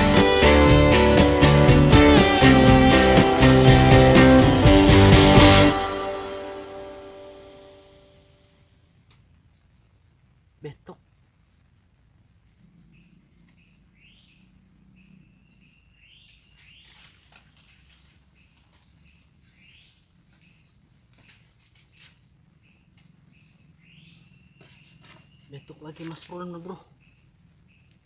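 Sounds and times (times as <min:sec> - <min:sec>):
high-pitched insect drone: 0:05.2 - 0:09.4.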